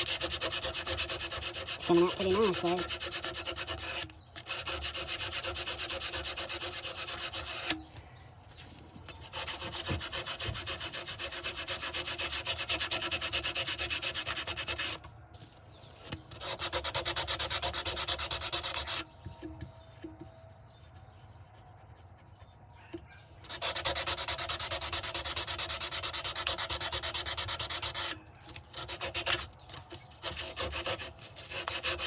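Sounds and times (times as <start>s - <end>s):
sandpaper rubbing on knife: 0.0s - 7.8s, 9.2s - 15.0s, 16.0s - 19.1s, 23.4s - 32.0s.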